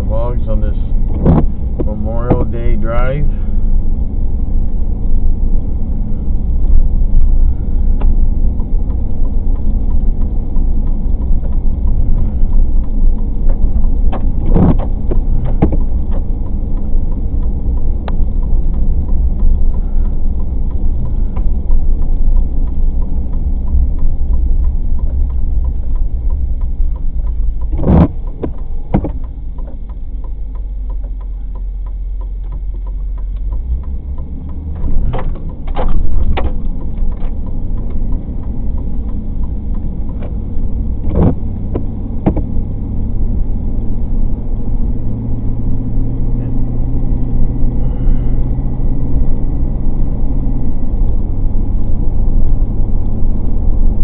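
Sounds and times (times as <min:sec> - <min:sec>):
car road and engine rumble: 0:00.0 - 0:54.0
sharp thumps: 0:01.0 - 0:02.8, 0:09.6 - 0:31.2, 0:34.1 - 0:42.7.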